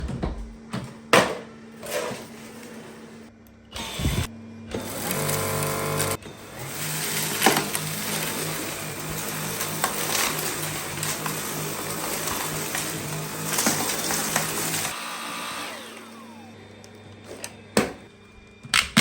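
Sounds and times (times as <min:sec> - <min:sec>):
vacuum cleaner motor humming: 0:01.8 - 0:19.0.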